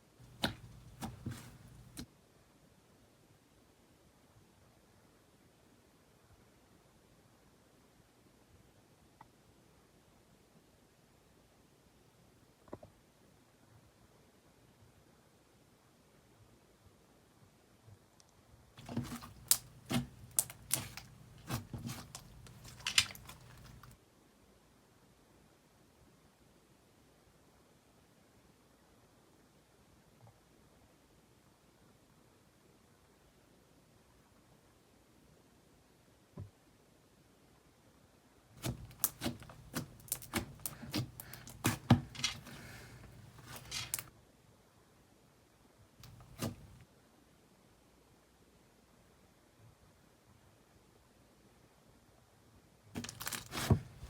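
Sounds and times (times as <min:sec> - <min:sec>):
slime squished by hand: 0:00.2 - 0:02.0, 0:18.8 - 0:24.0, 0:38.6 - 0:44.1, 0:53.0 - 0:54.0.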